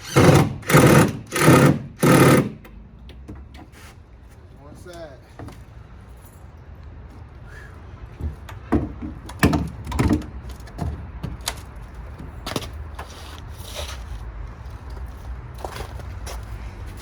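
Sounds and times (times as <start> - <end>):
irregular knocks and clunks: 8.1 - 12.6.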